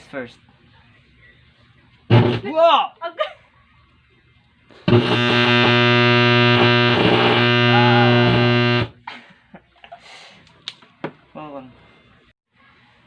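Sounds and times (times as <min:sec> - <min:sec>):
buzzy mains hum from speaker: 0:04.8 - 0:09.0.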